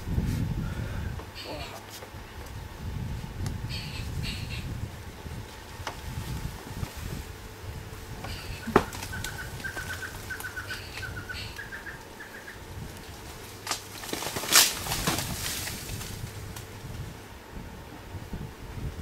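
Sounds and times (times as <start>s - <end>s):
bird chirping: 3.7s - 4.7s, 8.2s - 12.7s
sharp crackling bursts: 7.8s - 16.8s.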